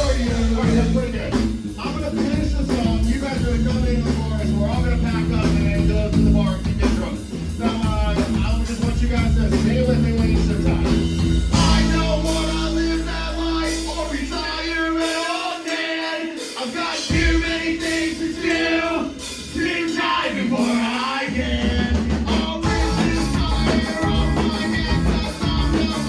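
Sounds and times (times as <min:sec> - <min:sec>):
distorted guitars: 0:00.0 - 0:26.0
drums: 0:00.0 - 0:26.0
punk rock band playing: 0:00.0 - 0:26.0
person shouting lead vocal: 0:22.6 - 0:26.0.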